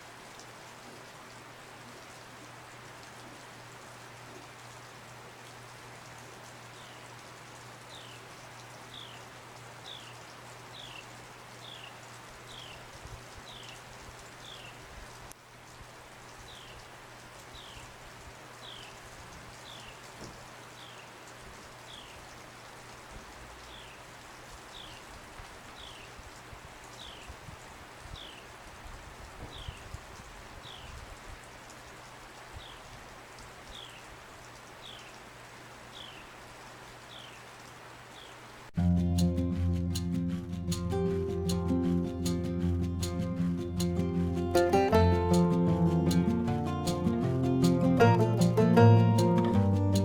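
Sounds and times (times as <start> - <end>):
snow falling patter and hiss: 0.0 - 38.9, 40.4 - 50.0.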